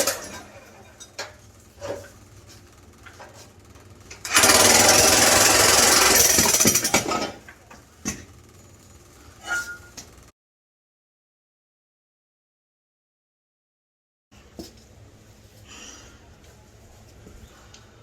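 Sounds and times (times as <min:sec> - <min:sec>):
jackhammer on metal: 0:04.2 - 0:07.4.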